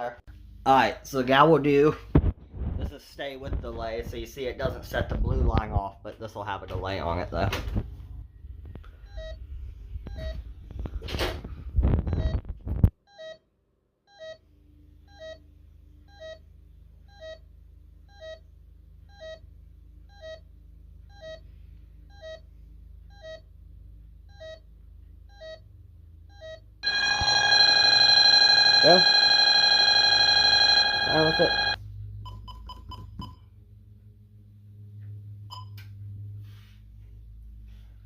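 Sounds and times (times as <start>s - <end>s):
alarm keypad short beeps: 26.8s - 31.8s.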